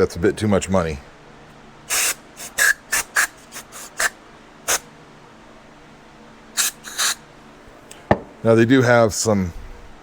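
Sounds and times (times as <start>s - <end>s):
aerosol spray bursts: 1.9s - 4.8s, 6.6s - 7.2s.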